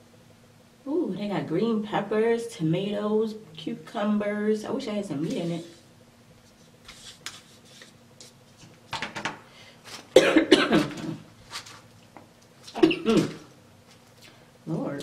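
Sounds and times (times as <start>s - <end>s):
woman coughing: 10.2s - 11.2s, 12.7s - 13.5s.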